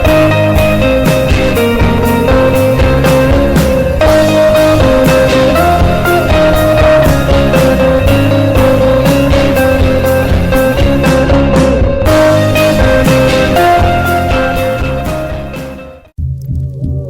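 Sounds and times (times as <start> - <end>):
instrumental rock music: 0.0 - 16.2.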